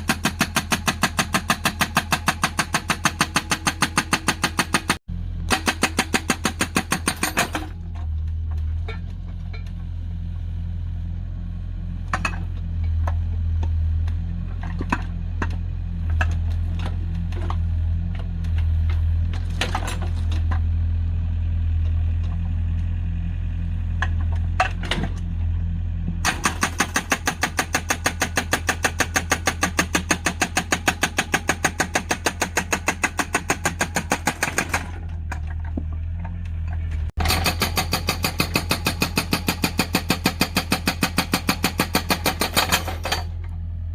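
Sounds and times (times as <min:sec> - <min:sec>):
hydraulic breaker hammering wood: 0:00.0 - 0:07.8, 0:26.2 - 0:35.4, 0:37.2 - 0:43.3
diesel engine droning: 0:05.0 - 0:06.0, 0:07.4 - 0:26.6, 0:34.7 - 0:37.4.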